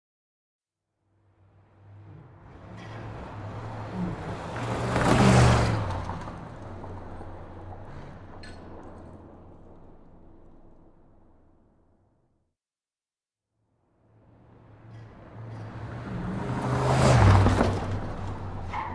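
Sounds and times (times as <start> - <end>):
sports car speeding past: 1.7 - 9.6, 14.3 - 18.9.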